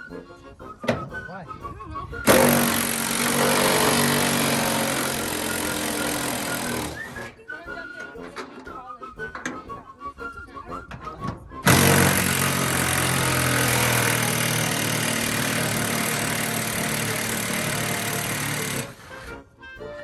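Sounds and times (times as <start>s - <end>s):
machine motor humming: 2.3s - 7.3s, 11.6s - 19.4s.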